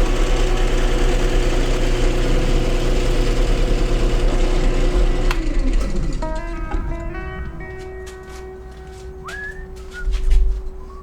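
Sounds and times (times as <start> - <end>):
power tool motor running: 0.0 - 6.7.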